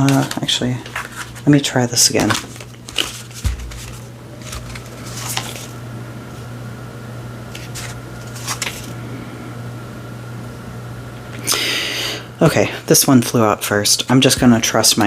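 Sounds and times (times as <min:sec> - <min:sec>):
cards being shuffled: 0:00.0 - 0:05.8, 0:07.5 - 0:09.0
low room hum: 0:00.0 - 0:15.0.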